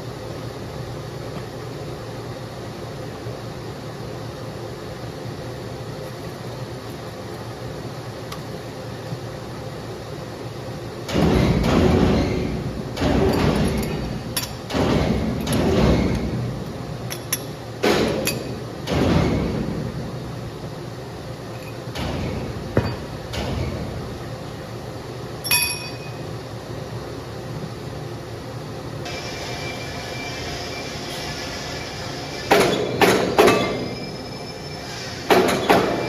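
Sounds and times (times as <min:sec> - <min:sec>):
machine hum: 0:00.0 - 0:36.0
metallic clinks: 0:25.4 - 0:26.2
ringing metal clank: 0:25.4 - 0:26.2.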